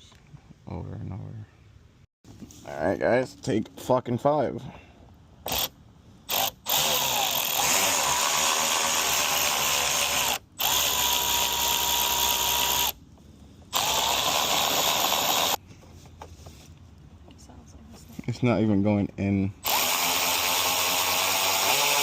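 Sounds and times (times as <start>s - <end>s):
power drill motor whine: 6.3s - 13.0s, 13.7s - 15.6s, 19.6s - 22.0s.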